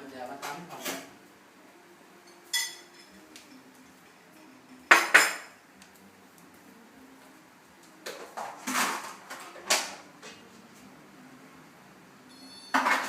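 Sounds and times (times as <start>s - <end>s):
dishes clattering: 2.3s - 3.2s, 4.9s - 5.6s, 8.1s - 10.4s, 12.6s - 13.0s.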